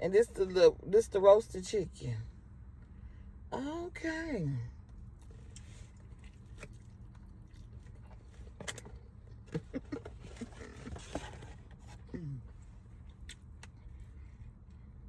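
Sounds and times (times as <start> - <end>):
steady low hum: 0.0 - 15.0
person chewing food: 5.2 - 8.5.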